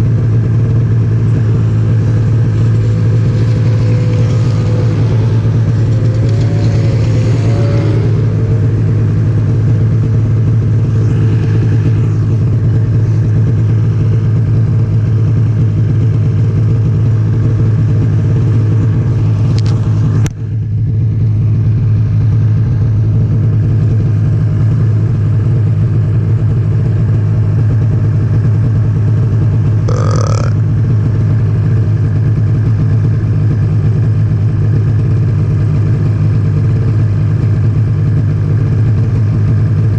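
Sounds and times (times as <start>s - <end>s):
snowmobile engine running: 0.0s - 24.6s, 28.9s - 30.7s
short high-pitched sound: 29.9s - 30.6s.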